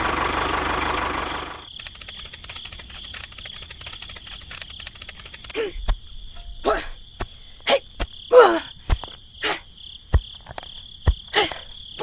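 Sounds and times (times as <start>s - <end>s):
insects trilling: 0.2s - 12.0s
sharp clicks: 1.6s - 6.0s.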